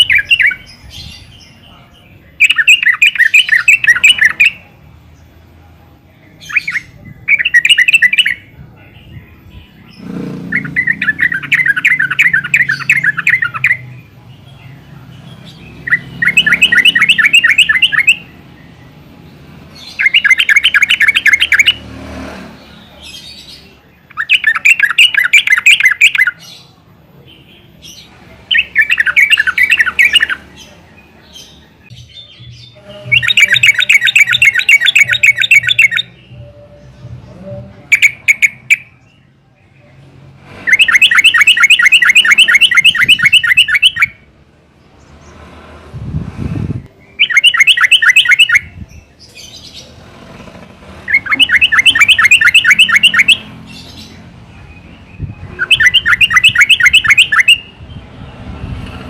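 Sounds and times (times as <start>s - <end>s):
bird chattering call: 19.8s - 21.8s, 33.0s - 36.2s, 40.7s - 44.2s, 47.1s - 50.0s, 51.0s - 54.2s, 55.5s - 57.7s.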